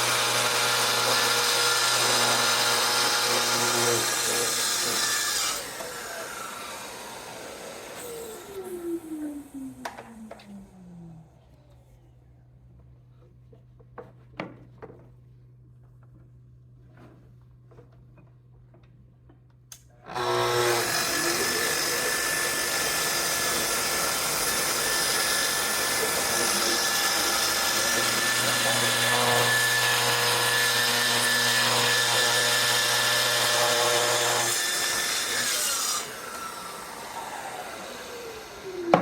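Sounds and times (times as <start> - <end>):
dust extractor running: 0.0 - 10.8, 20.1 - 35.3, 36.0 - 39.0
circular saw cutting wood: 0.0 - 11.0, 20.0 - 39.0
saw spinning down whine: 0.0 - 11.5, 20.1 - 39.0.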